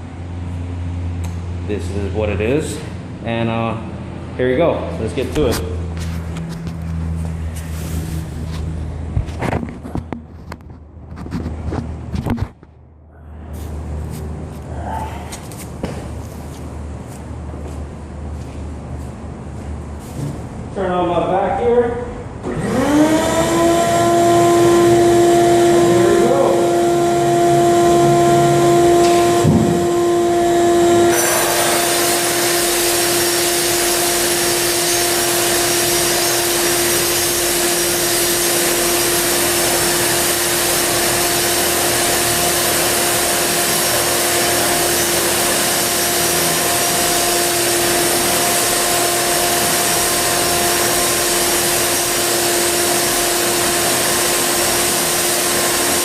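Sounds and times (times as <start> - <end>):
shop vacuum whining: 21.9 - 56.0
grinder grinding concrete: 22.8 - 56.0.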